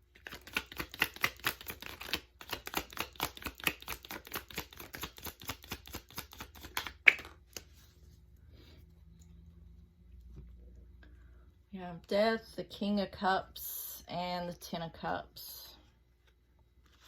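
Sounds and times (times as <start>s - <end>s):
cards being shuffled: 0.1s - 8.0s, 16.2s - 17.0s.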